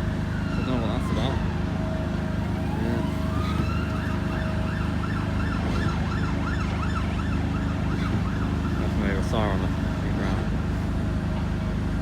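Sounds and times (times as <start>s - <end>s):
siren yelping: 0.2s - 8.9s.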